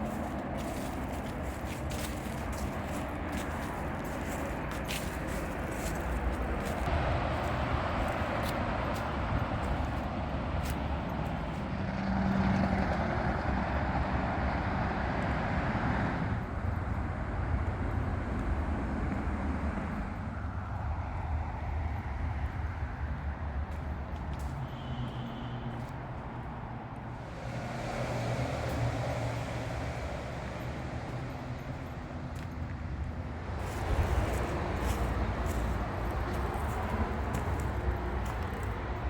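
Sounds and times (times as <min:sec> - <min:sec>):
road traffic passing: 0:00.0 - 0:39.0.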